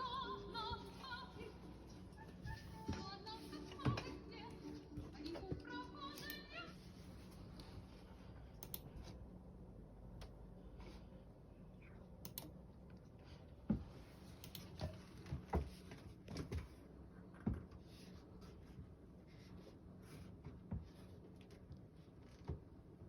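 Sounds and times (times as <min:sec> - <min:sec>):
faint steady hum: 0:00.0 - 0:23.0.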